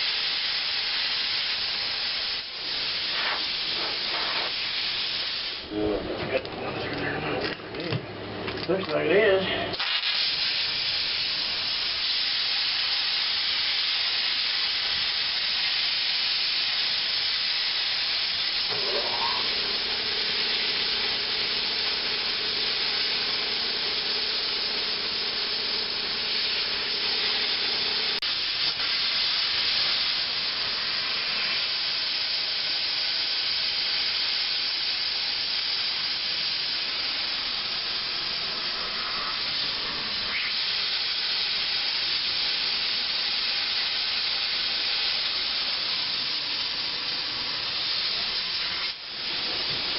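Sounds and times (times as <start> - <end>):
plasma cutter hissing: 0.0 - 5.8, 9.7 - 49.9
steady hum: 18.7 - 31.7.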